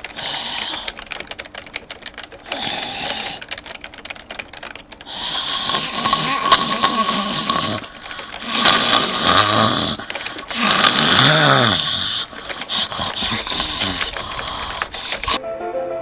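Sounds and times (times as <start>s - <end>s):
dogs growling: 5.2s - 15.4s.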